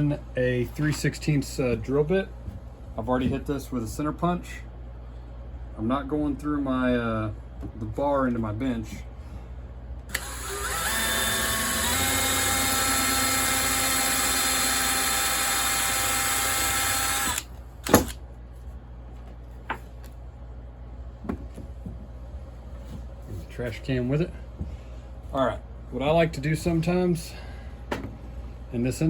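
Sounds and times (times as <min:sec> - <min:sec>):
electric drill drilling metal: 0:10.1 - 0:17.5.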